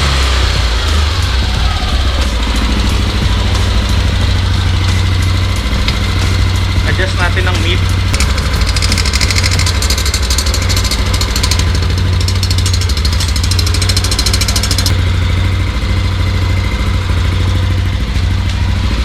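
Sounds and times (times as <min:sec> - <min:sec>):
scooter engine idling: 0:00.0 - 0:19.0
fine rapid ticking: 0:04.9 - 0:15.0.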